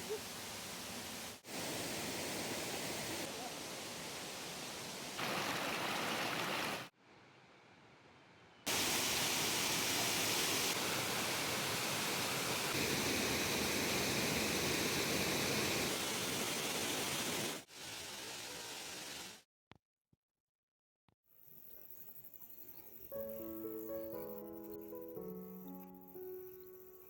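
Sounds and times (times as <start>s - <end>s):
waterfall rushing: 5.2s - 6.9s, 8.7s - 19.0s.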